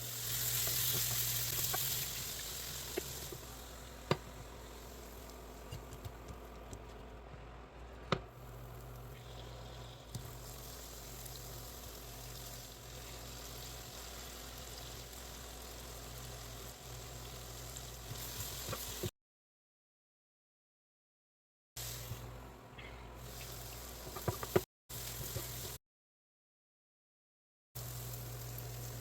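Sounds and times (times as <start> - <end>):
food sizzling in hot oil: 0.0 - 5.3, 8.4 - 19.1, 21.8 - 22.2, 23.2 - 25.8, 27.8 - 29.0.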